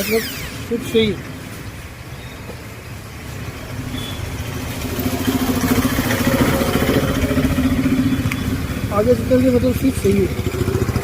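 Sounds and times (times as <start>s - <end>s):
electric drill motor humming: 0.0s - 0.9s.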